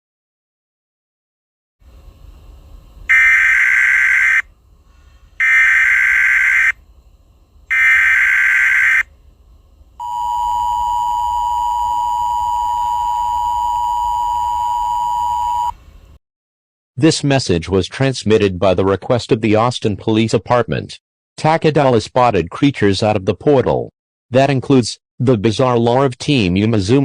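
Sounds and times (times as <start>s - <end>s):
two-tone attention signal: 3.1s - 4.4s, 7.7s - 9.0s, 10.0s - 15.7s
harsh digital data bursts: 3.1s - 4.5s, 5.4s - 6.8s, 7.7s - 9.1s.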